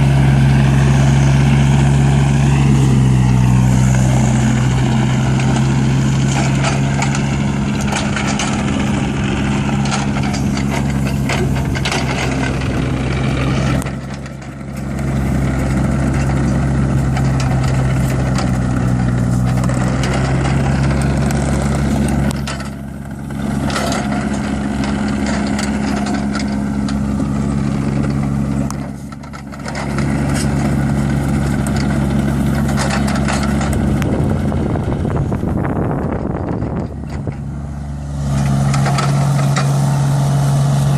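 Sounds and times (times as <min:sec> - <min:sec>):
excavator diesel engine running: 0:00.0 - 0:40.9
constant rattle: 0:03.4 - 0:40.9.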